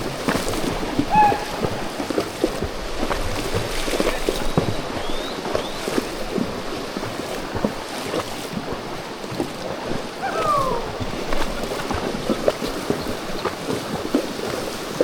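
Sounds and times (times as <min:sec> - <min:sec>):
river water splashing: 0:00.0 - 0:15.0
short falling call: 0:01.1 - 0:01.7, 0:10.2 - 0:11.1.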